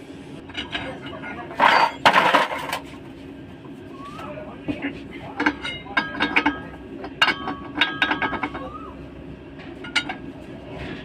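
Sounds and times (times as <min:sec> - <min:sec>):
steady low hum: 0:00.0 - 0:11.0
metal tools clanking: 0:00.5 - 0:02.9, 0:05.1 - 0:08.8, 0:09.6 - 0:11.0.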